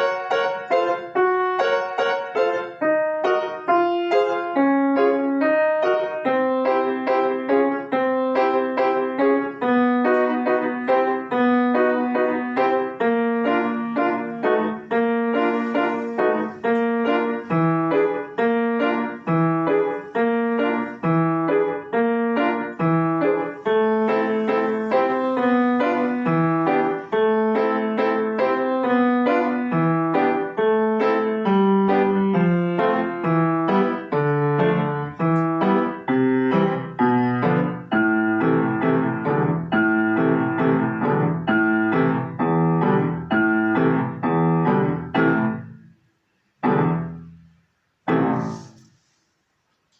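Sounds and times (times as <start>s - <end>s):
solo piano piece: 0.0s - 49.9s.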